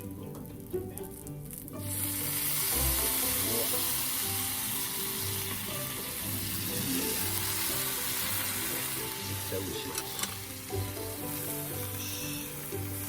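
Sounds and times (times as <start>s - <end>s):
food frying with loud sizzle: 0.0s - 13.0s.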